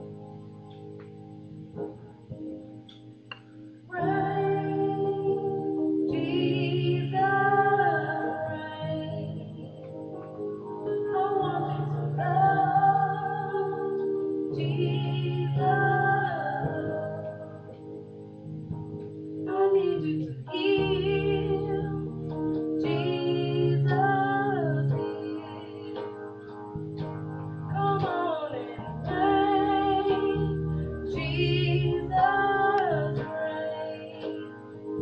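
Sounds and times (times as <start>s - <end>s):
instrumental backing with bass: 0.0s - 35.0s
gospel group singing: 3.9s - 9.3s, 10.9s - 17.7s, 27.8s - 34.4s.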